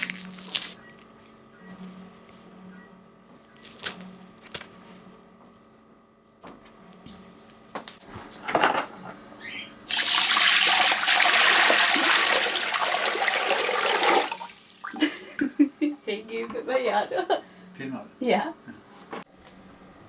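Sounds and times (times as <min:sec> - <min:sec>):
water rushing into sink: 0:09.9 - 0:15.6.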